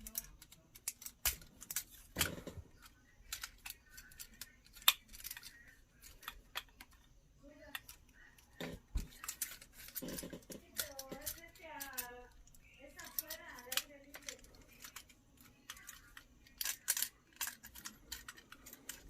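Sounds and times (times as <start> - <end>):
plastic parts clicking and snapping: 0.0 - 19.0.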